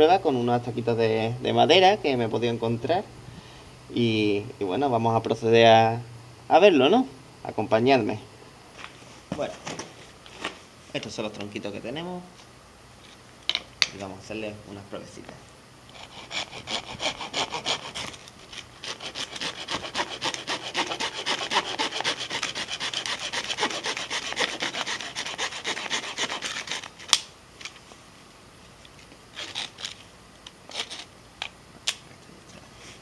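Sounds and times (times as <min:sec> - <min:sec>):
hand saw cutting log: 0:15.9 - 0:27.2.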